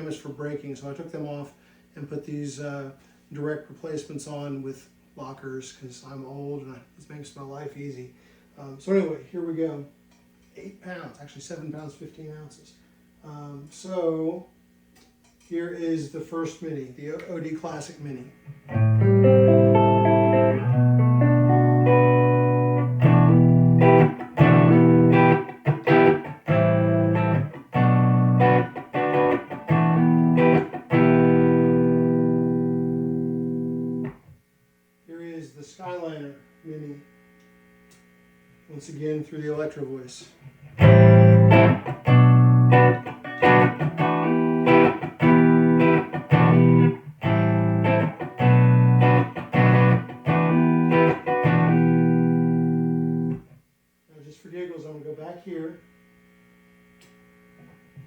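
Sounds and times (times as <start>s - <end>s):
clean electric guitar chords: 18.5s - 34.4s, 40.7s - 53.5s.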